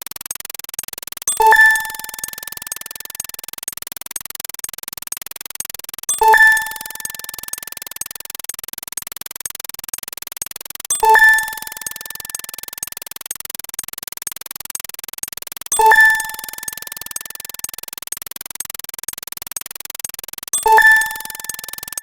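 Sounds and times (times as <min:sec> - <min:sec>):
faint rapid ticking: 0:00.0 - 0:22.0
electronic two-tone ding: 0:01.3 - 0:03.3, 0:06.1 - 0:08.2, 0:10.9 - 0:13.0, 0:15.7 - 0:17.8, 0:20.6 - 0:22.0.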